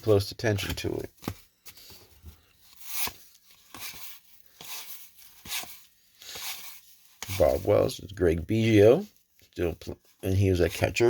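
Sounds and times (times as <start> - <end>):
cards sliding and swishing: 0.6 - 7.9.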